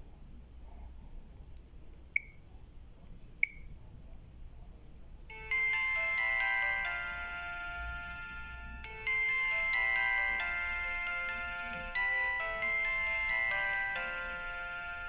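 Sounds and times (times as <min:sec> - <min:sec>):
polyphonic phone ringtone: 0:05.3 - 0:15.0.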